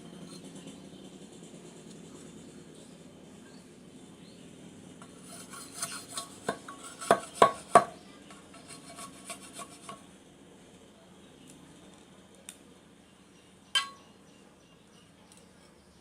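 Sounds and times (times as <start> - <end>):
light scrapes and clicks on bamboo: 5.0 - 10.0.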